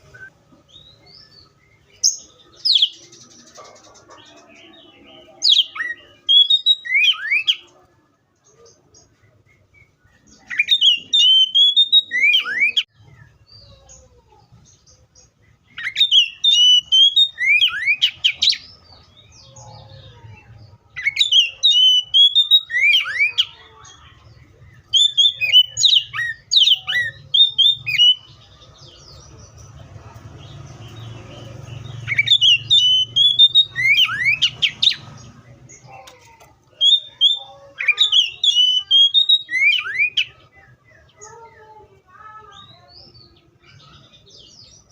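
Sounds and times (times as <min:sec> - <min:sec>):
bird singing whistled phrases: 0:05.4 - 0:07.6, 0:09.4 - 0:13.4, 0:15.7 - 0:18.7, 0:21.0 - 0:23.6, 0:24.7 - 0:28.3, 0:32.0 - 0:35.0, 0:36.8 - 0:40.4.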